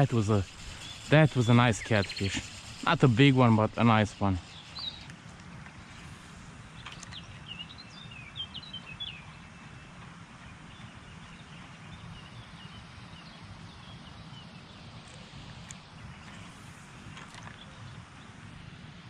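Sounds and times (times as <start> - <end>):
small birds chirping: 0.0 - 9.8
outdoor background rush: 0.0 - 19.0.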